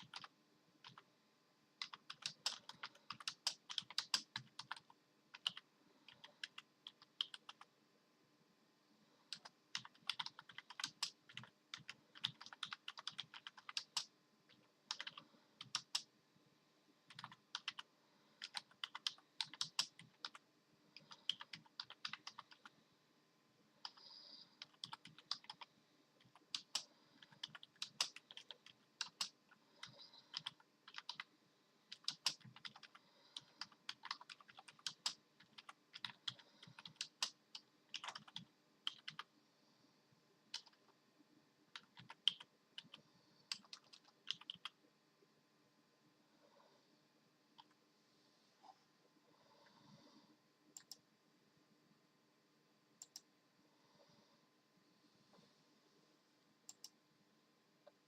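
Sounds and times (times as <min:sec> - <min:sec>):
computer keyboard keys clacking: 0:00.0 - 0:01.0, 0:01.8 - 0:07.7, 0:09.3 - 0:16.1, 0:17.1 - 0:20.4, 0:21.0 - 0:22.7, 0:24.6 - 0:31.3, 0:31.9 - 0:39.3, 0:40.5 - 0:40.8, 0:41.7 - 0:44.8.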